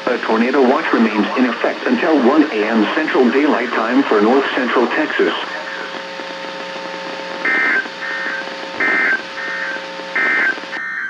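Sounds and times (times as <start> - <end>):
steady low hum: 0.0 - 10.8
two-tone digital data bursts: 7.4 - 10.8.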